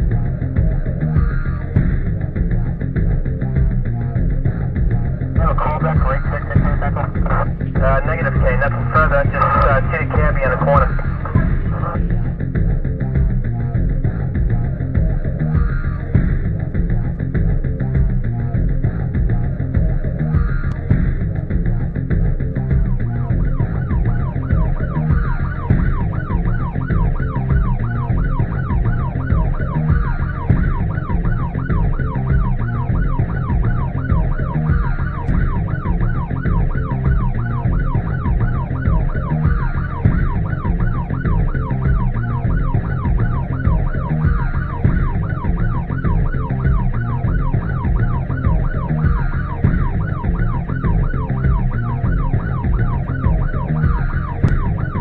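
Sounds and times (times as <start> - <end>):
music with heavy bass beat: 0.0 - 55.0
siren yelping: 5.4 - 12.1, 22.6 - 55.0.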